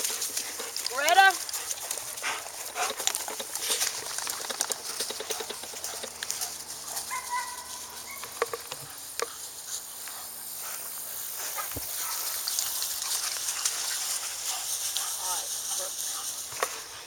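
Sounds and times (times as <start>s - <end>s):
dogs pattering and rustling: 0.0s - 17.0s
scattered clicks: 2.8s - 6.6s.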